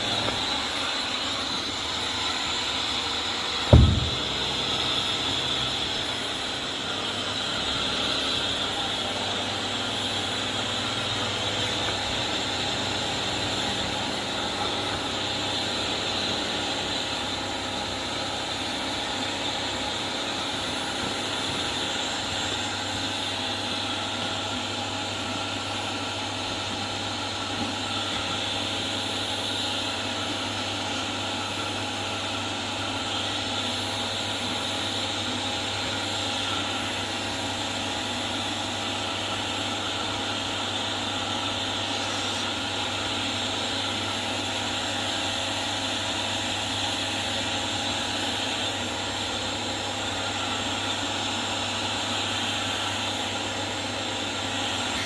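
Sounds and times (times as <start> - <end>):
upright vacuum cleaner running: 0.0 - 55.0
sharp thump: 3.7 - 4.9.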